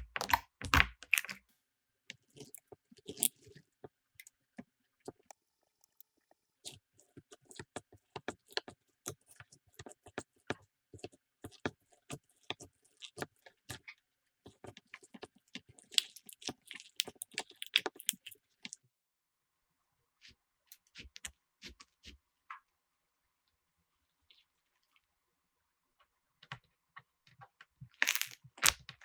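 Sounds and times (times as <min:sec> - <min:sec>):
slime clicking and popping: 0:00.0 - 0:01.4, 0:16.0 - 0:18.3.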